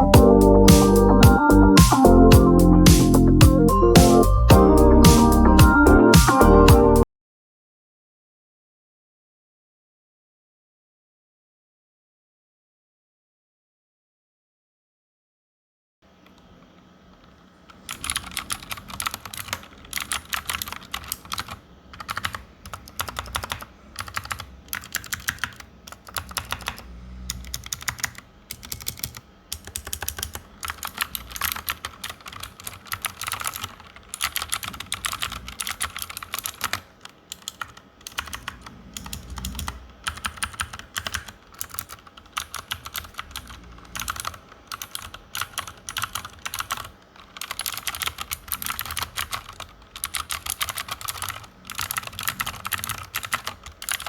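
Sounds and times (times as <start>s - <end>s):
mechanical keyboard typing clicks: 17.7s - 54.0s.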